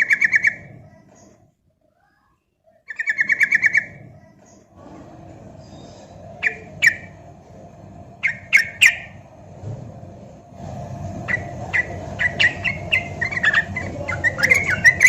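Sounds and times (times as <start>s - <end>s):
bird rattling trill and chirps: 0.0s - 1.3s, 2.9s - 4.0s, 5.7s - 7.2s, 8.2s - 9.3s, 11.1s - 15.0s
low steady hum: 3.4s - 15.0s.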